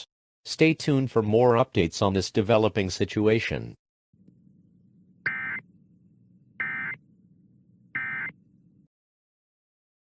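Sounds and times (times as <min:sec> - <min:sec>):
faint low hum: 0:04.2 - 0:08.9.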